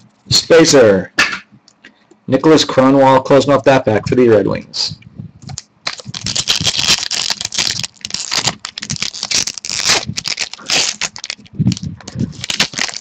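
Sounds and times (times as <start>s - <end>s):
foil pack crinkling: 5.5s - 13.0s.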